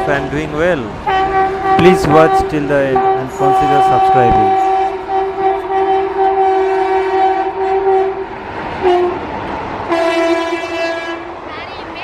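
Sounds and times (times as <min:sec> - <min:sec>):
train horn blasts: 0:00.0 - 0:00.4, 0:01.0 - 0:09.3, 0:09.9 - 0:11.4
train rumble: 0:00.0 - 0:12.0.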